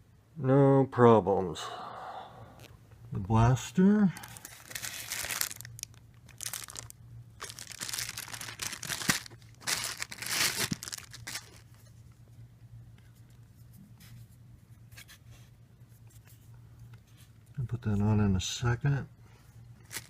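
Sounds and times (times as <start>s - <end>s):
packing wrap crumpling and tearing: 4.2s - 11.8s, 19.8s - 20.0s.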